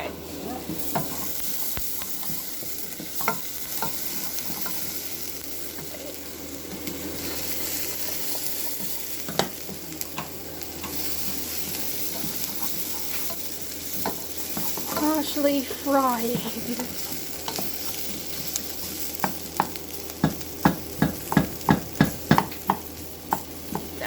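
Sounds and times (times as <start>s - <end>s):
onion sizzling in a pan: 0.0s - 24.0s
utensil knocking against pan: 19.6s - 23.9s.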